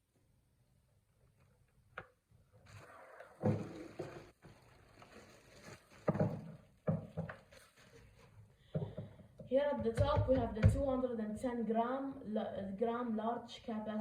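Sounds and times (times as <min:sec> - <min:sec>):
rustling: 0:02.6 - 0:08.6
objects knocking on table: 0:06.0 - 0:07.4.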